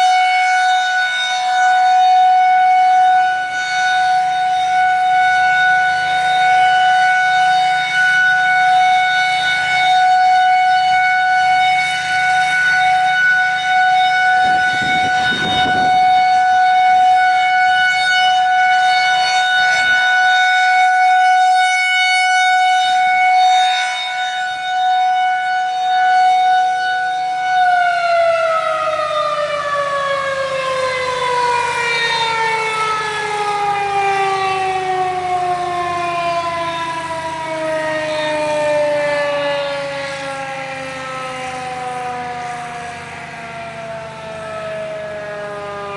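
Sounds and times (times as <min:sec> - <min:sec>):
warning siren steady tone: 0:00.0 - 0:45.9.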